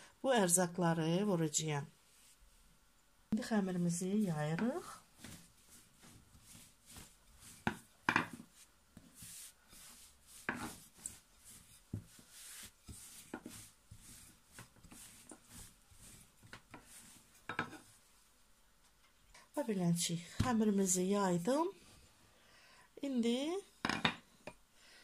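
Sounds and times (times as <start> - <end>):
rolling pin swishing on dough: 4.0 - 18.2
rolling pin knocking on board: 7.6 - 8.4, 10.5 - 10.8.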